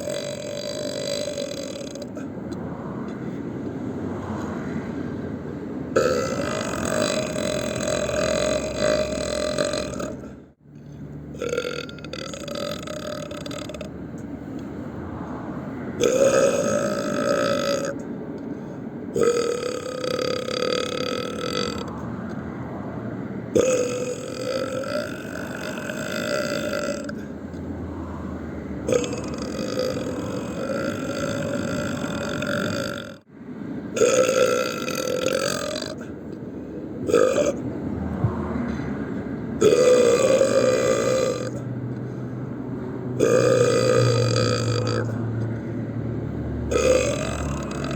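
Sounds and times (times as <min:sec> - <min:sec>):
long burps: 0:00.0 - 0:02.4, 0:05.9 - 0:10.4, 0:11.3 - 0:14.0, 0:16.0 - 0:18.0, 0:19.1 - 0:22.0, 0:23.5 - 0:27.4, 0:28.8 - 0:33.2, 0:34.0 - 0:36.2, 0:37.0 - 0:37.6, 0:39.6 - 0:41.7, 0:43.2 - 0:45.5, 0:46.7 - 0:47.9.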